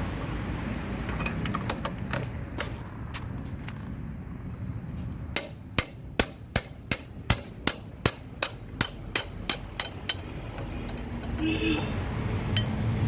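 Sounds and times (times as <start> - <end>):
hammer striking metal: 5.4 - 10.4.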